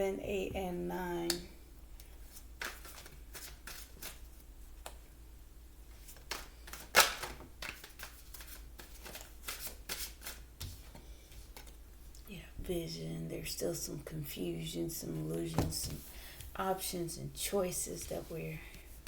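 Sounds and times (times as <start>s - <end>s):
cards clicking and slapping on table: 2.6s - 4.2s, 6.1s - 10.8s.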